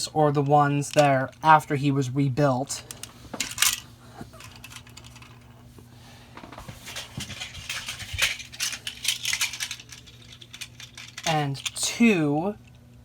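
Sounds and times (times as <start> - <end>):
steady low hum: 0.0 - 13.0
plastic packaging rustling: 6.3 - 11.7
plastic toys clicking: 6.9 - 11.8.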